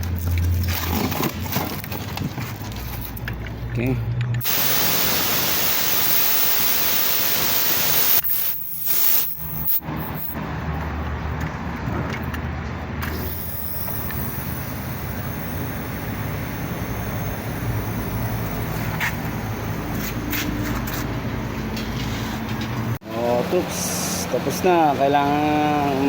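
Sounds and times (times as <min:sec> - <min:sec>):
gas hissing through a hose: 0:04.4 - 0:10.4, 0:13.0 - 0:20.4.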